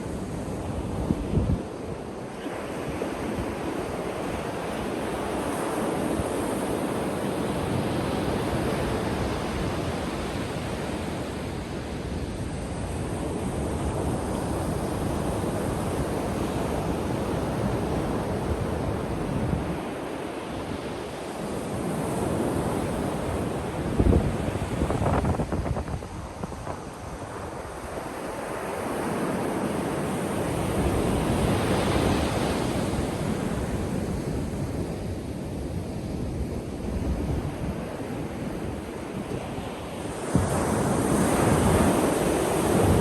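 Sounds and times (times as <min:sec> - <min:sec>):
ocean surf washing onto beach: 0:00.0 - 0:43.0
wind buffeting microphone: 0:21.8 - 0:29.7.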